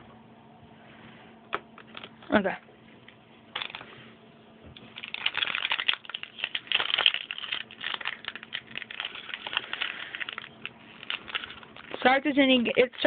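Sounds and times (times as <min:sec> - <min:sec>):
plastic foil wrapper crinkling: 0:03.6 - 0:04.0, 0:04.8 - 0:13.0.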